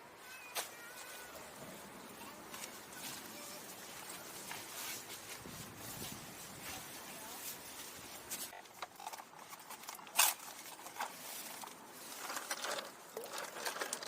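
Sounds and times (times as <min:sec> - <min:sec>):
rustling and light clicks: 0:02.2 - 0:14.0.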